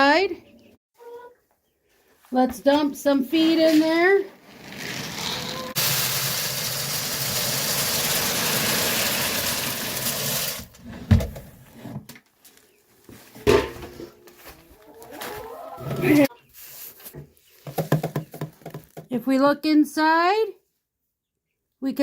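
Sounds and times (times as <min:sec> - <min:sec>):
dry feed pouring into a bin: 0:04.7 - 0:10.8.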